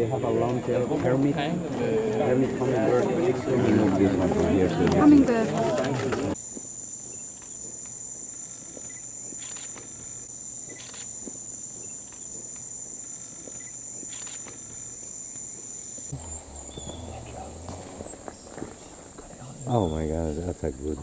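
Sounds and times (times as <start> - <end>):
high-pitched insect drone: 15.2 - 20.8.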